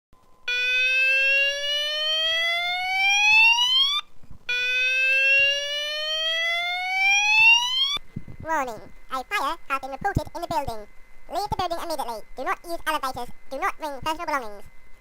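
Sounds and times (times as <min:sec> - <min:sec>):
fire alarm whoop tone: 0:00.4 - 0:08.0.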